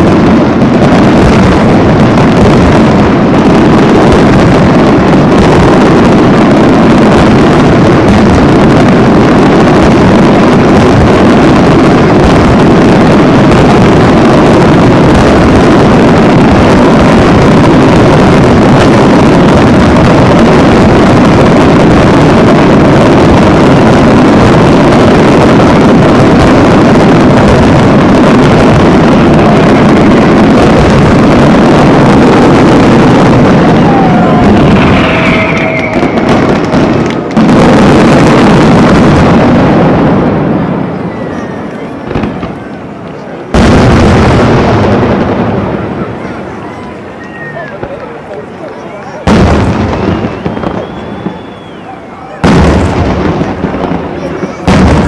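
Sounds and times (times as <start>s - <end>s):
aerial fireworks barrage: 0.0s - 55.0s.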